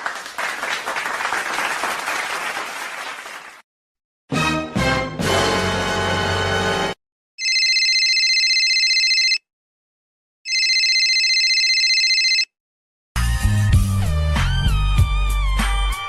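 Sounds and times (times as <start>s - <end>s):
telephone ringing: 7.4s - 9.5s, 10.5s - 12.5s.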